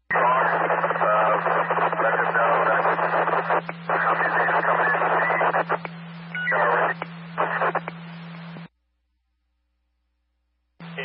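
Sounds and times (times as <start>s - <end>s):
steady low hum: 0.0s - 11.0s
radio static: 0.1s - 8.7s.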